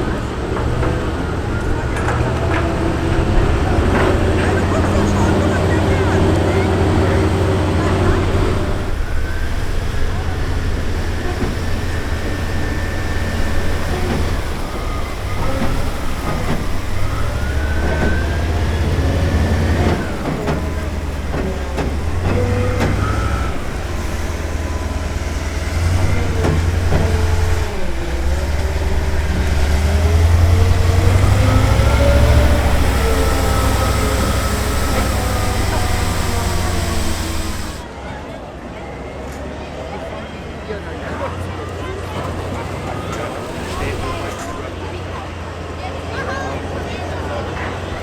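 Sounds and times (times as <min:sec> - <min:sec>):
engine whine: 0:00.1 - 0:37.9, 0:43.1 - 0:44.7
diesel engine rumbling: 0:02.3 - 0:37.8, 0:43.3 - 0:44.6.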